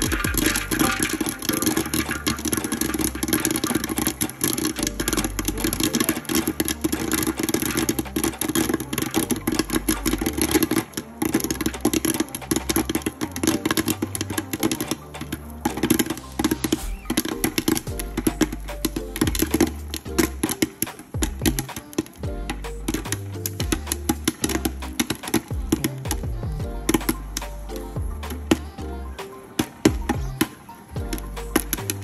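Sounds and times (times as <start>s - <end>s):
popcorn maker motor hum: 0.0s - 16.8s
popcorn kernels popping: 0.0s - 32.0s.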